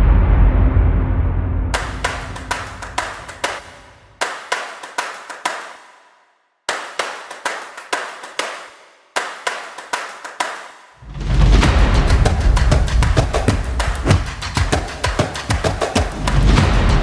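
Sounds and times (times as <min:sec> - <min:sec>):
echoing hand claps: 0:01.8 - 0:11.0, 0:11.7 - 0:17.0
loud music with drums: 0:11.2 - 0:17.0.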